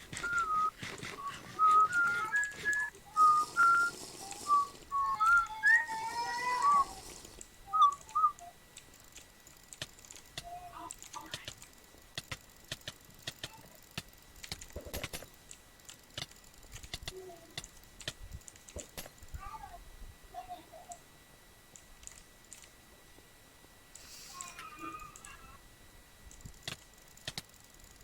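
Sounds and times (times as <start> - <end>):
sharp irregular clicks: 6.5 - 19.1, 21.7 - 22.8, 23.9 - 25.4, 26.3 - 28.0.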